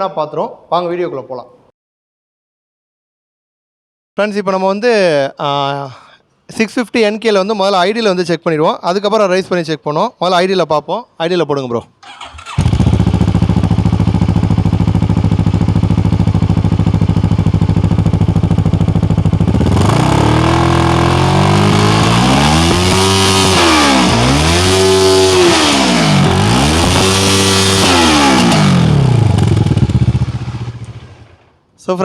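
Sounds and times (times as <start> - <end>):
motorcycle engine idling and revving: 12.0 - 31.5.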